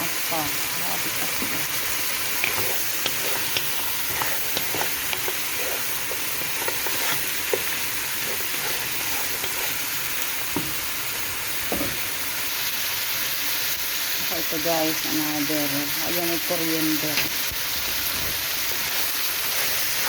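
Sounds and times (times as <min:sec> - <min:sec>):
meat sizzling in a pot: 0:00.0 - 0:20.0
utensil clicking against pot: 0:02.4 - 0:09.7.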